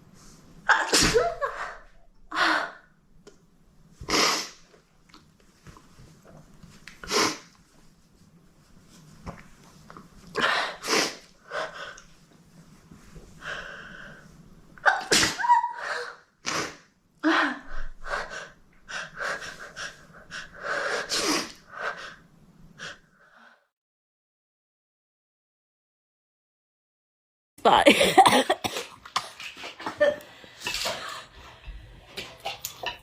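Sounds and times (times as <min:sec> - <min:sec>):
people sneezing: 0:00.7 - 0:01.6, 0:14.9 - 0:15.7.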